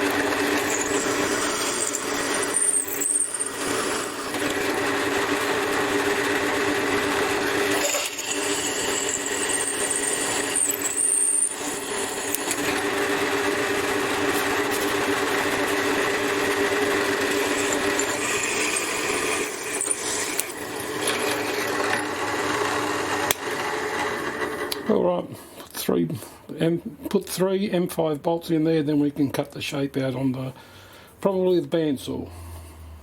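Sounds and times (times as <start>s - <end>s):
drill bit squealing: 0.0s - 13.7s, 14.8s - 22.4s
drill press motor drilling steel: 0.0s - 24.9s.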